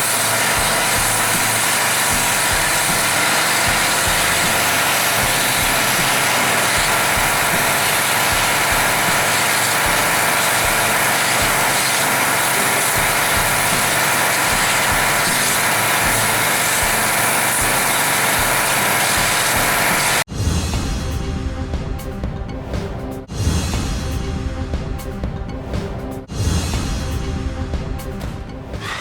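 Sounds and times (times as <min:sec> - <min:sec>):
pressure washer engine running: 0:00.0 - 0:20.3, 0:28.8 - 0:29.0.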